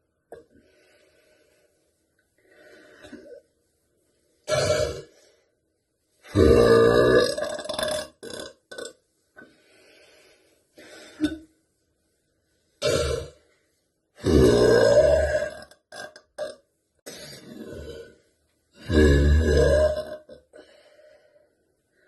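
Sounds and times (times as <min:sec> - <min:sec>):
woman burping loudly: 0:06.3 - 0:08.9, 0:14.2 - 0:18.0.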